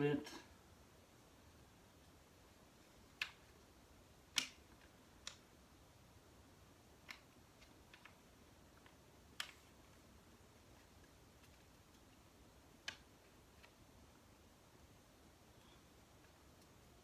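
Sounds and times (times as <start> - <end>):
small plastic parts clicking: 4.3 - 5.5, 7.0 - 9.8.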